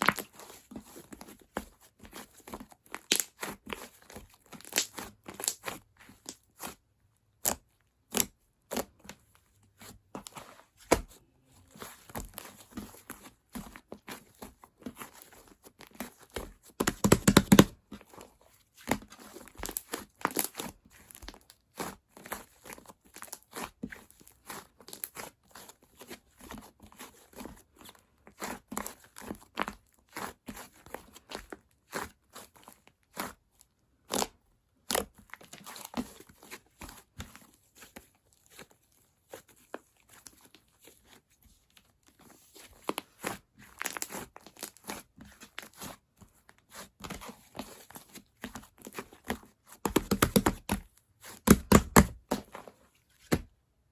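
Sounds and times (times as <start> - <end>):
whipped cream crackling and squishing: 0.0 - 53.9.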